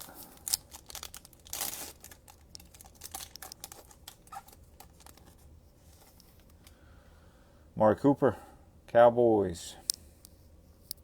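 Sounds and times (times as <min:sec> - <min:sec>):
foil wrapper tearing and crinkling: 0:00.0 - 0:05.4.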